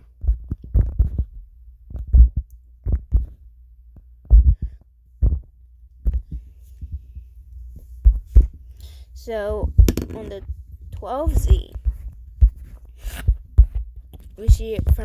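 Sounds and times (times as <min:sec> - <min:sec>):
steady low hum: 0:00.0 - 0:15.0
dull knocks and thumps: 0:09.6 - 0:10.6.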